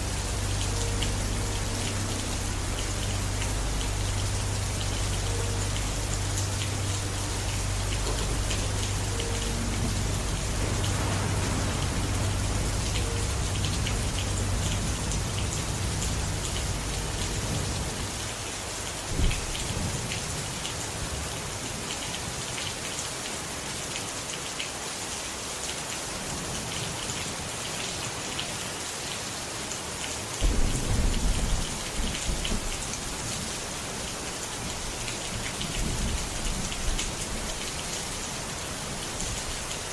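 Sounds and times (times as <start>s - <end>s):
steady rain: 0.0s - 39.9s
thunder rumbling and clapping: 30.4s - 33.0s.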